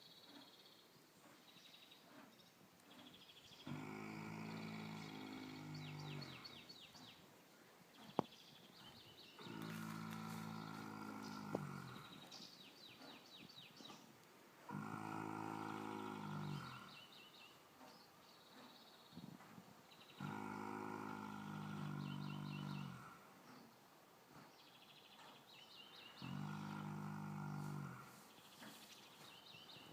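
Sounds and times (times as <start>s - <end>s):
low snoring: 3.6s - 7.1s, 9.4s - 12.4s, 14.7s - 17.4s, 20.1s - 23.3s, 26.2s - 28.2s.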